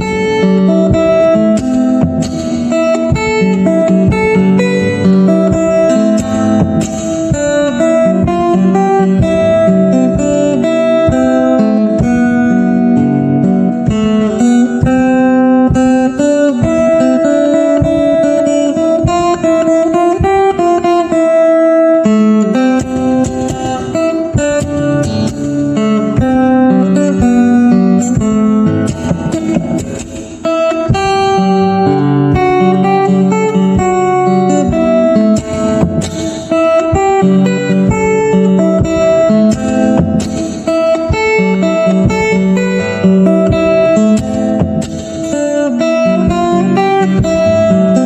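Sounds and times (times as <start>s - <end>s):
percussive taps on guitar body: 0.0s - 12.5s, 19.0s - 19.5s, 22.4s - 32.8s, 33.5s - 45.3s
fingerstyle acoustic guitar: 0.0s - 48.0s.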